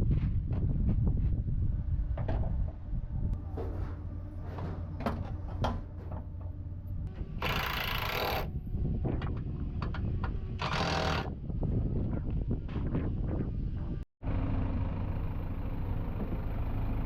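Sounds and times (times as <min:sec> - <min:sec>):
steady low hum: 0:00.0 - 0:10.7.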